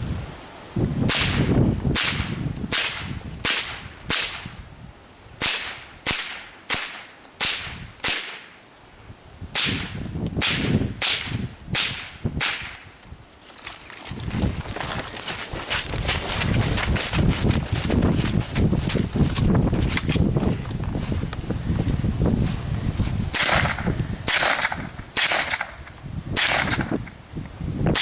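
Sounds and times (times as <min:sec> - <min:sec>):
rifle shots: 0:05.4 - 0:08.5, 0:23.4 - 0:25.8, 0:26.4 - 0:26.9.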